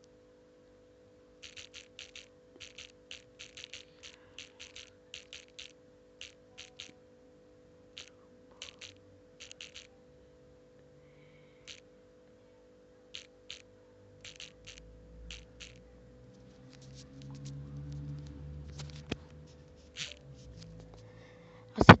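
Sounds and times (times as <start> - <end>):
faint steady hum: 0.0 - 22.0
smartphone keyboard clicks: 1.4 - 6.9, 8.0 - 9.9, 13.2 - 13.6, 14.2 - 15.8.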